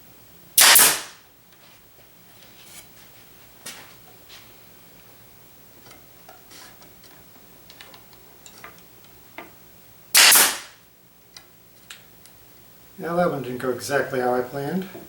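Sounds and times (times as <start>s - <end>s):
nail gun shot: 0.6s - 1.2s, 10.2s - 10.8s.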